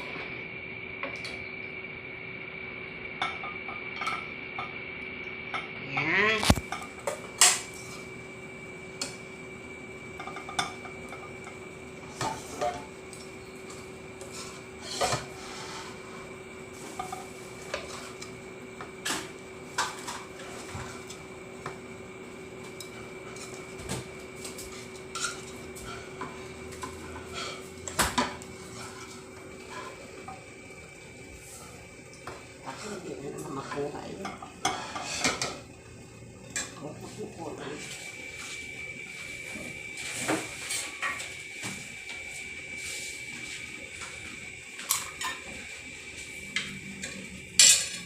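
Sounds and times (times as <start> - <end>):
utensils clinking against a pot: 24.5 - 30.4, 46.5 - 48.0.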